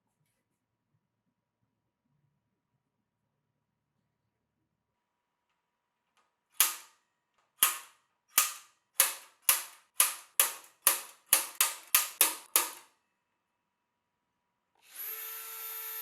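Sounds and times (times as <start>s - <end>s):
hammer striking sheet steel: 6.6s - 6.9s, 7.6s - 12.9s.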